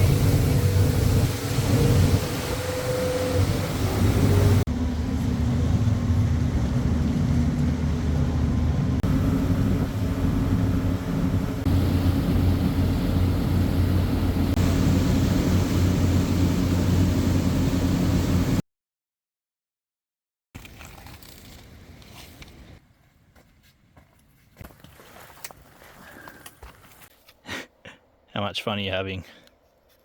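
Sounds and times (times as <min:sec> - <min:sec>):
boat engines humming: 0:00.0 - 0:18.6
water noise: 0:00.0 - 0:18.6
wind: 0:00.0 - 0:18.6, 0:20.6 - 0:30.0.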